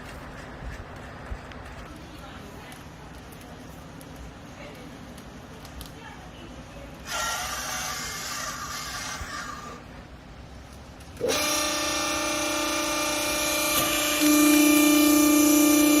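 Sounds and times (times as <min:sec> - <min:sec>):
mechanical noise: 0:00.0 - 0:16.0
motor and hydraulic pump whine: 0:11.2 - 0:16.0.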